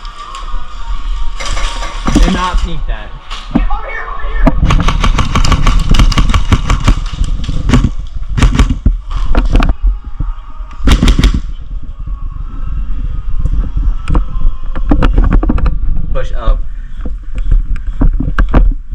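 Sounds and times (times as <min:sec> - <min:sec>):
low rumble: 0:00.0 - 0:18.9
airsoft guns firing: 0:04.6 - 0:09.0, 0:10.8 - 0:11.6.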